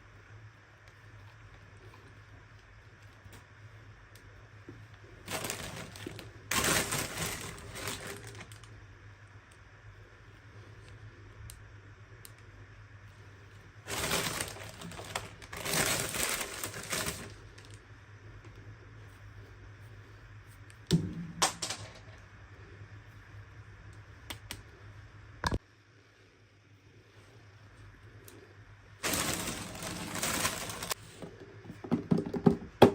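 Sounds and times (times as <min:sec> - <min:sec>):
faint steady hum: 0:00.0 - 0:32.9
plastic crinkling rustle: 0:05.2 - 0:08.7, 0:13.8 - 0:17.8, 0:29.0 - 0:31.2.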